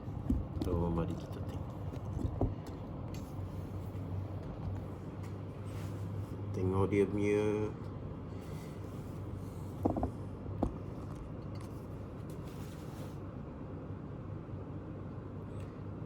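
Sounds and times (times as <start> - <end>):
laminator humming: 0.0 - 12.5.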